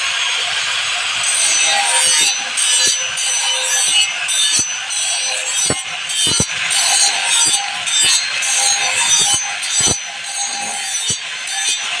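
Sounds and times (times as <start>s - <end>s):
file rasping on saw blade: 1.2s - 12.0s.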